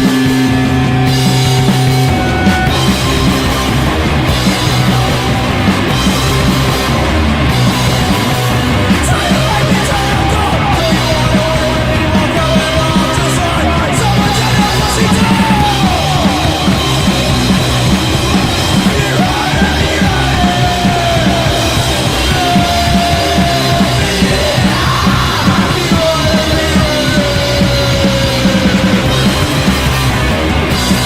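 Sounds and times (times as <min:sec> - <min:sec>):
drum kit: 0:00.0 - 0:31.0
guitars: 0:00.0 - 0:31.0.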